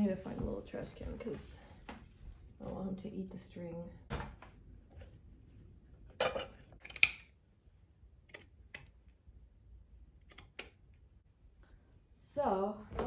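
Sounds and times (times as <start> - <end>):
scissors snipping: 10.2 - 10.8.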